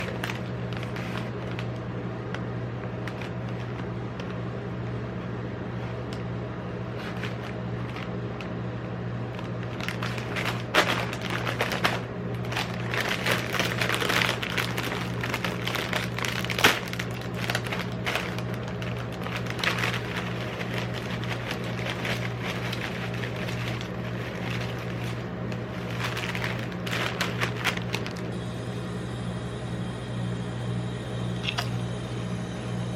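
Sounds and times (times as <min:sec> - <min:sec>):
chips crunching: 0:00.0 - 0:05.3, 0:06.8 - 0:08.6, 0:09.2 - 0:28.3
steady low hum: 0:00.0 - 0:32.9.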